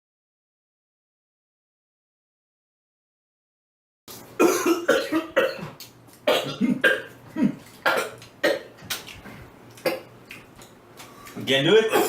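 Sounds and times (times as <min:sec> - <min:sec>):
person coughing harshly: 0:04.4 - 0:08.7.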